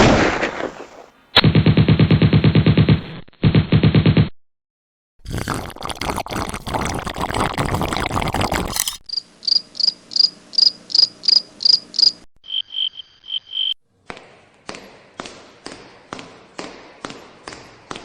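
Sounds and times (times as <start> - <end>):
insect chirping: 8.8 - 13.8.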